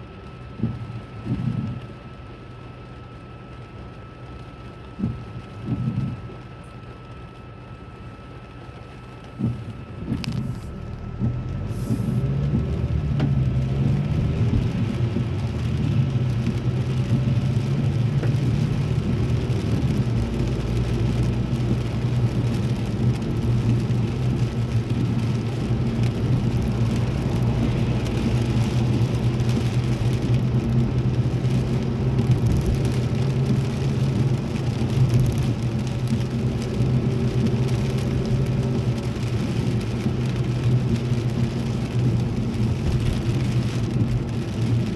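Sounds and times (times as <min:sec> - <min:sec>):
rain hissing on car: 0:00.0 - 0:44.9
car engine and tyres drone: 0:09.4 - 0:44.9.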